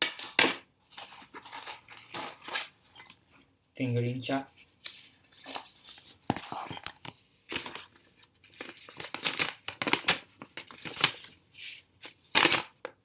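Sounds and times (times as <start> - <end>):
paper crackling and rustling: 4.6 - 12.8.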